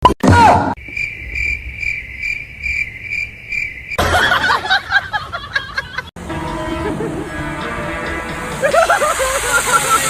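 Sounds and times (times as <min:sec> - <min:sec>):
high insect-like chirping: 0:00.8 - 0:04.0.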